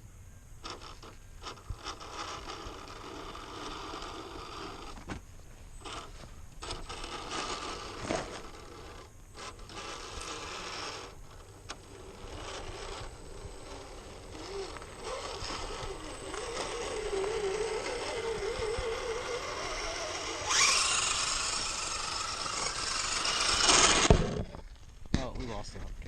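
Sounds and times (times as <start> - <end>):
toy car electric motor whining: 0.6 - 5.2, 5.8 - 25.0
gear clicking and rattle: 5.8 - 25.1.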